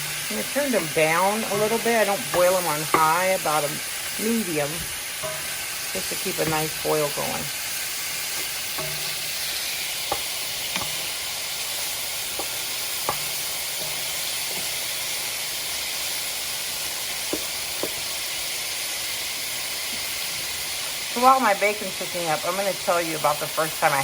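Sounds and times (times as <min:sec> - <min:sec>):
bacon sizzling: 0:00.0 - 0:24.0
fat popping: 0:08.0 - 0:15.2, 0:16.9 - 0:18.4.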